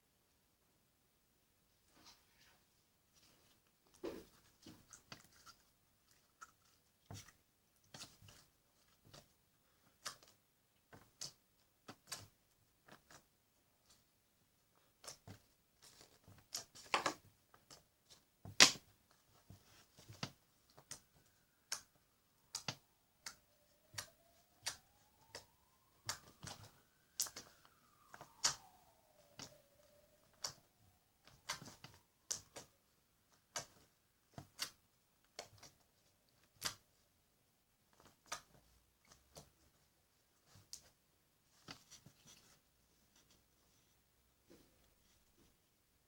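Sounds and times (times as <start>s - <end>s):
faint rising and falling tone: 20.9s - 33.3s
slime clicks and pops: 28.2s - 28.8s.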